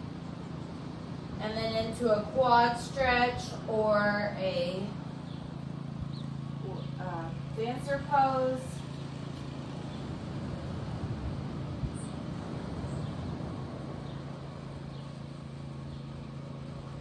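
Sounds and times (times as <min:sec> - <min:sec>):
low steady hum: 0:00.0 - 0:17.0
ocean surf washing ashore: 0:09.6 - 0:15.8.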